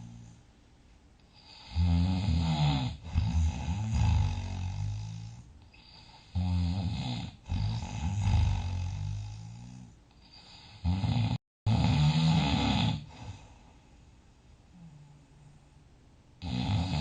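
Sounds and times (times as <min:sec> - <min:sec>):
person snoring loudly: 0:01.4 - 0:13.5, 0:16.4 - 0:17.0.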